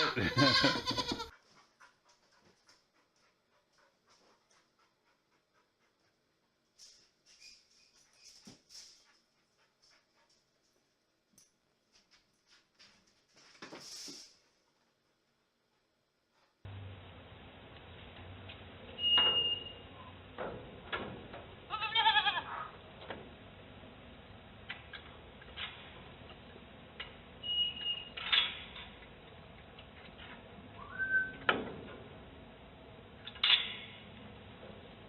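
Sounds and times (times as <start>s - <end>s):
animal crying: 0.0s - 1.3s.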